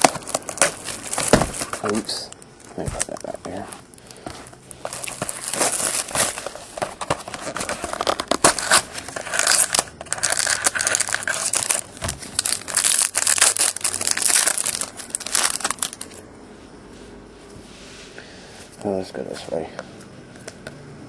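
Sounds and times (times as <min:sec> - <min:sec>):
plastic wrapping tearing and crinkling: 0:00.0 - 0:16.2.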